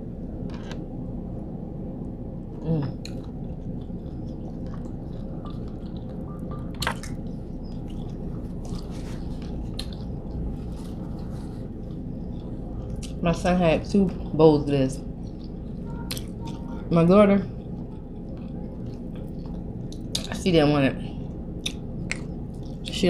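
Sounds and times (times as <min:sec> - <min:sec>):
steady low hum: 0:00.0 - 0:23.0
wet chewing mouth sounds: 0:02.8 - 0:14.4, 0:15.0 - 0:20.4, 0:21.2 - 0:23.0
lip smacks and clicks: 0:03.0 - 0:11.2, 0:15.2 - 0:16.7, 0:17.7 - 0:20.4, 0:21.6 - 0:23.0.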